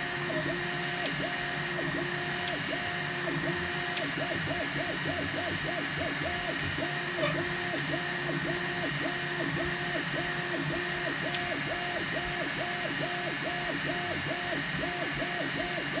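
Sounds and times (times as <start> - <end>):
printer squeaking tone: 7.0 - 7.8.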